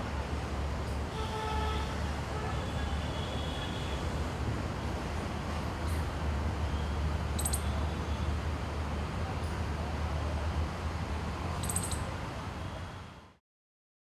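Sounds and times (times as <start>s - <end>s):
low traffic rumble: 0.0s - 13.4s
squirrel chirping squeaks: 7.4s - 7.7s, 11.6s - 12.1s.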